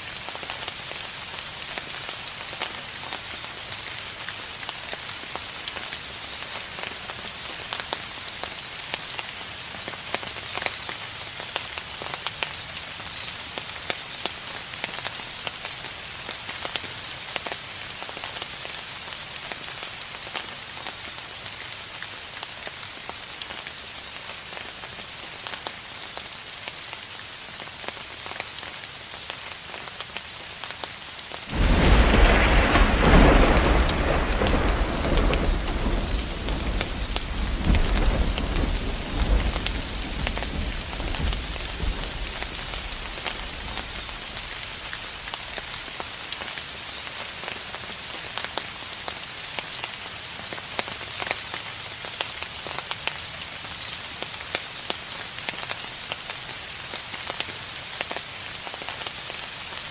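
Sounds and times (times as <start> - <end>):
rain pattering: 0.0 - 59.9
thunder rumbling: 31.5 - 45.8.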